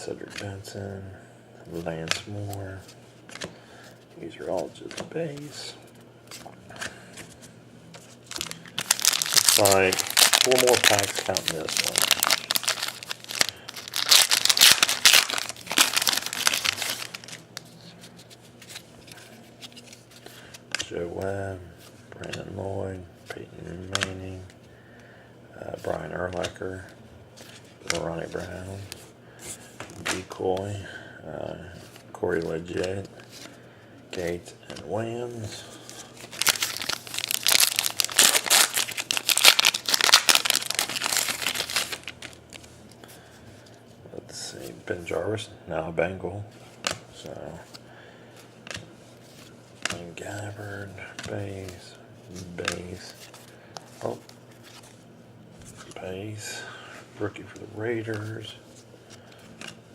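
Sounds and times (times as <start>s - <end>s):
wrapper tearing and crinkling: 8.2s - 17.7s, 36.2s - 42.6s.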